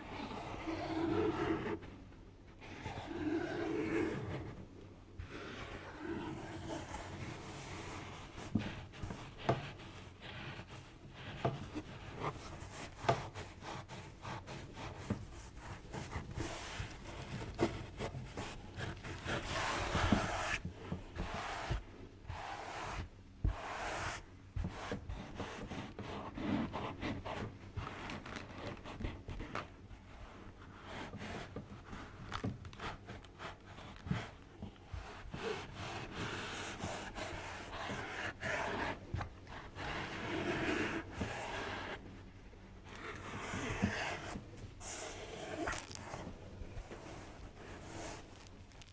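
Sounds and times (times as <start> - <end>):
hands rubbing and massaging: 45.5 - 48.9.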